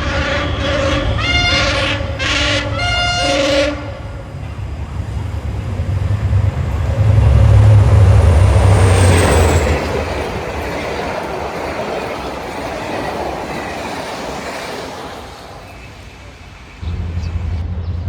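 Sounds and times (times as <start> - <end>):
train horn blasts: 0.0 - 4.7
train passing with low rumble: 0.0 - 18.0.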